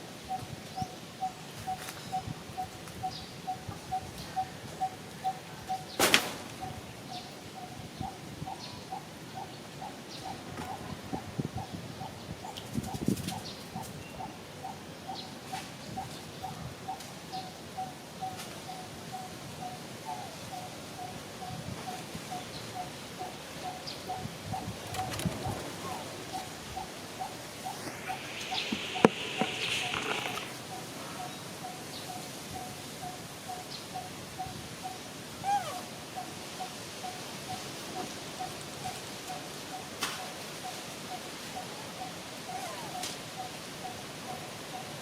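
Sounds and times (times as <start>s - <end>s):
bird hooting: 17.4s - 31.8s, 34.9s - 35.9s, 41.6s - 44.4s
faint bird chirps: 22.3s - 32.8s.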